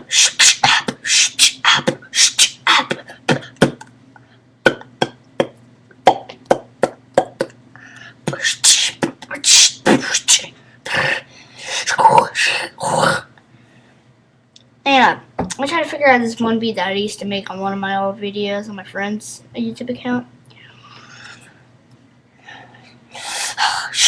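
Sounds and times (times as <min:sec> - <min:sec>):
person beatboxing: 0:00.0 - 0:03.9, 0:04.6 - 0:07.6, 0:08.2 - 0:13.2, 0:23.4 - 0:24.0.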